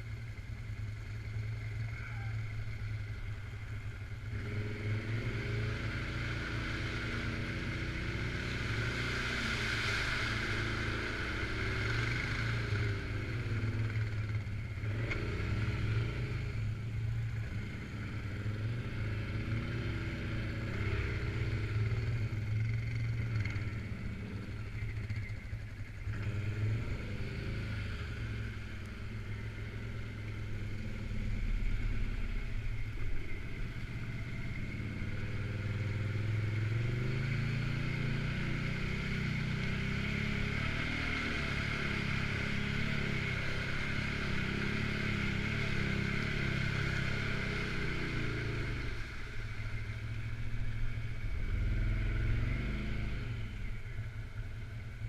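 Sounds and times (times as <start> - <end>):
quad bike engine revving: 4.3 - 14.2, 14.8 - 16.5, 17.5 - 25.2, 33.6 - 49.1, 51.0 - 53.6.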